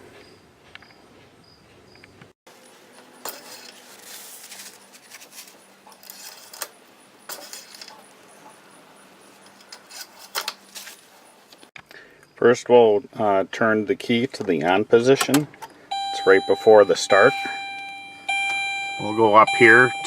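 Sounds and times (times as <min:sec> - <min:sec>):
small metal objects clinking: 0:03.3 - 0:08.0, 0:09.4 - 0:11.1
faint steady hum: 0:15.6 - 0:20.0.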